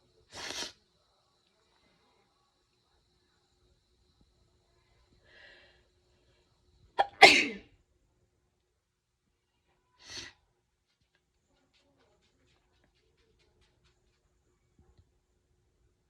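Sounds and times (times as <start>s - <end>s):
person sneezing: 7.0s - 7.6s.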